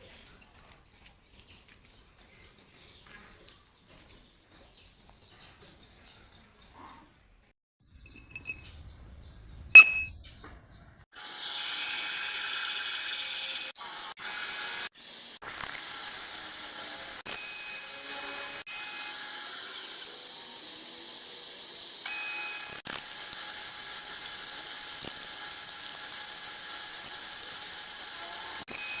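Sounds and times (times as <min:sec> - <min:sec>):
sharp metal clank: 0:09.8 - 0:10.1
power tool running on metal: 0:11.2 - 0:29.0.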